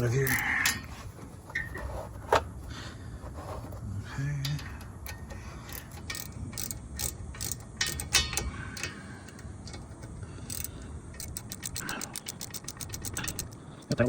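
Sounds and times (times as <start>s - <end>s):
hand ratchet clicking: 0.0s - 0.9s, 4.4s - 14.0s.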